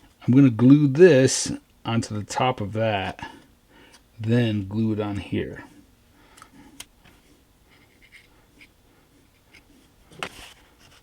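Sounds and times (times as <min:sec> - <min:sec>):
light scrapes of model parts: 0:07.1 - 0:11.0.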